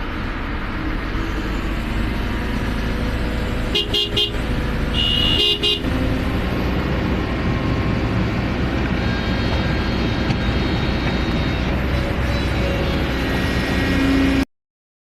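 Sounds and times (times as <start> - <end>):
heavy vehicle engine running: 0.0 - 14.4
vehicle horn honk: 3.7 - 5.9.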